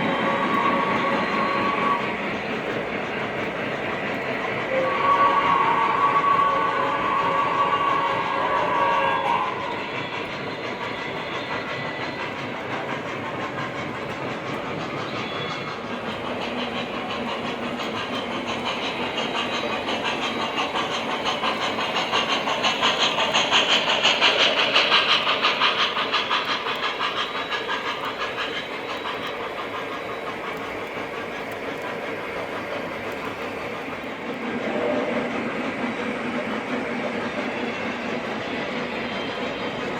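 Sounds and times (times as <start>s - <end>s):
train whistle tone: 0.0s - 2.4s, 4.6s - 12.4s, 34.4s - 36.3s
model train rumbling: 0.0s - 39.9s.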